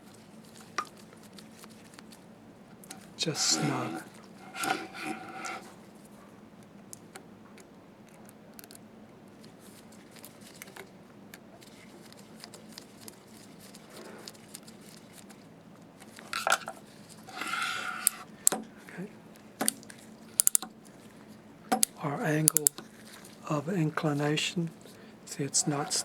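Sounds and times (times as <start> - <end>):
small metal parts clicking: 19.6 - 20.7, 21.7 - 23.3.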